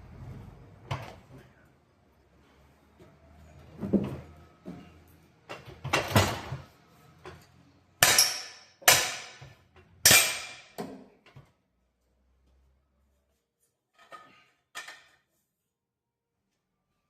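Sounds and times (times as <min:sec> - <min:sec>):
hammer striking metal: 0:08.0 - 0:10.8.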